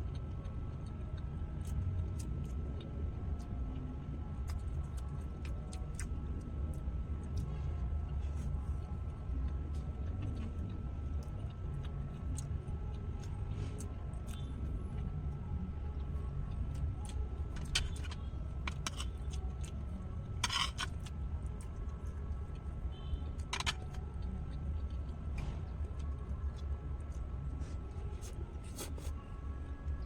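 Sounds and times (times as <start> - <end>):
steady low hum: 0.0 - 30.0
crunching: 20.4 - 21.1.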